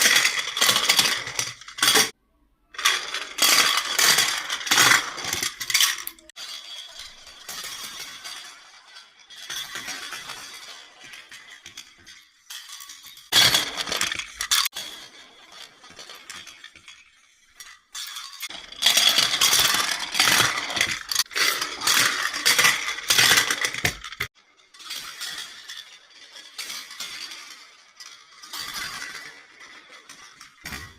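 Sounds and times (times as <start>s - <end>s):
toy cars rattling down track: 0.0s - 30.9s.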